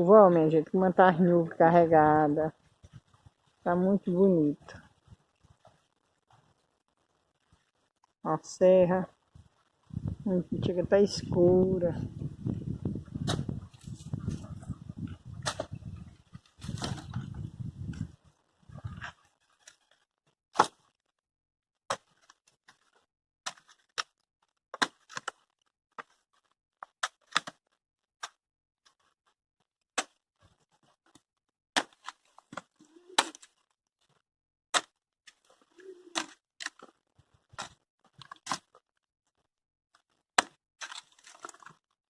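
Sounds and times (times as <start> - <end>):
wood and clay cracking: 12.4 - 21.2, 21.8 - 29.4, 30.0 - 31.2, 31.8 - 42.0.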